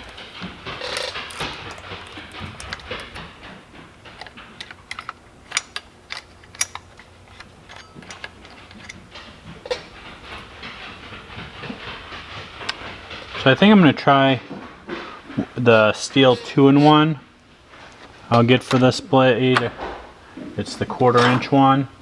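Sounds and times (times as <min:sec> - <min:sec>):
metal clicks and rattling: 0:00.0 - 0:13.6, 0:17.7 - 0:21.8.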